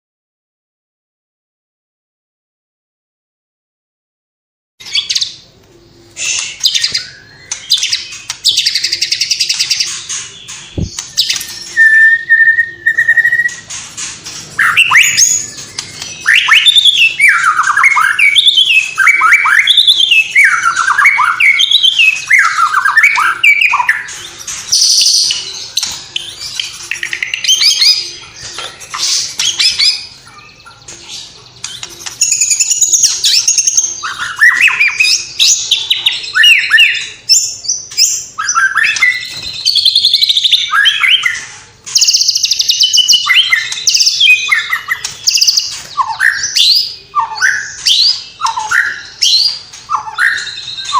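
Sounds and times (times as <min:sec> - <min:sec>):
songbird singing varied song: 0:14.6 - 0:50.9.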